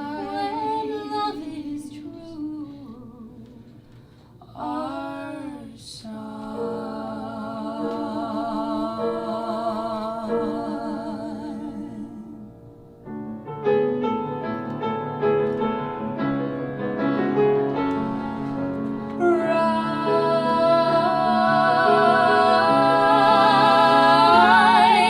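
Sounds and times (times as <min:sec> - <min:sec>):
piano playing: 0:06.7 - 0:25.0
person singing with vibrato: 0:19.2 - 0:25.0.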